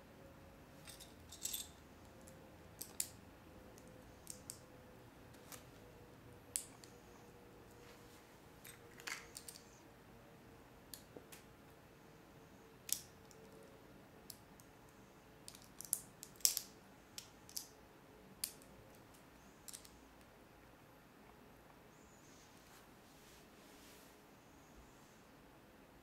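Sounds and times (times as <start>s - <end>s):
plastic bricks clicking together: 15.5s - 17.7s.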